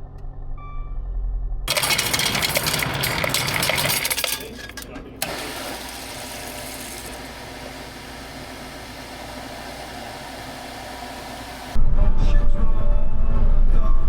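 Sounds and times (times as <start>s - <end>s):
dump truck engine running: 1.7s - 11.8s.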